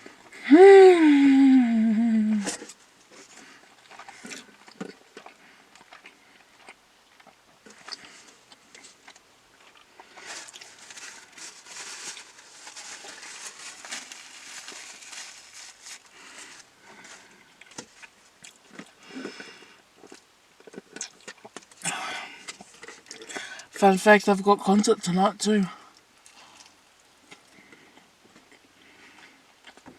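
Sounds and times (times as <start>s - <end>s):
food wrappers rustling: 7.7s - 21.8s
person biting and chewing: 17.4s - 21.8s.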